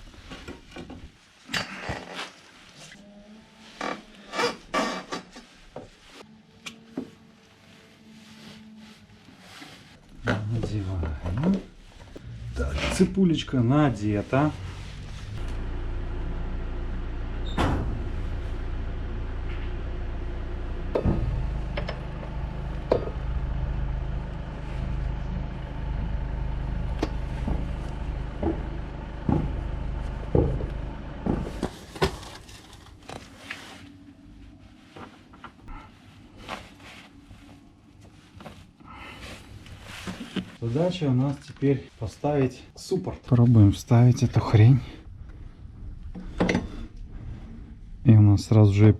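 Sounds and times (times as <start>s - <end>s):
low engine-like drone: 11.9s - 33.3s, 44.2s - 48.6s.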